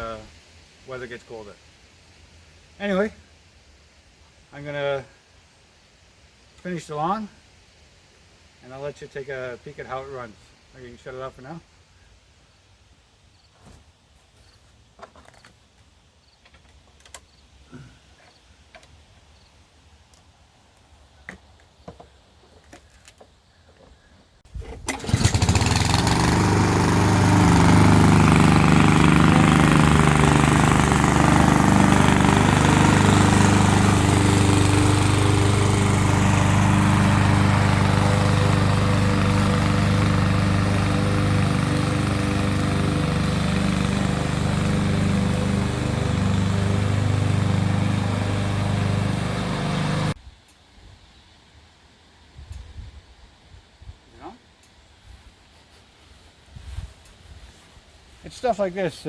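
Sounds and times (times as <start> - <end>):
lawn mower engine running: 24.7 - 50.2.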